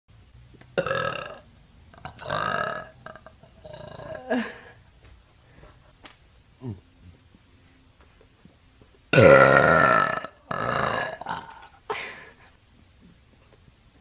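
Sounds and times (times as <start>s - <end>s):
woman burping: 0.8s - 1.4s, 2.0s - 4.8s, 9.1s - 12.0s.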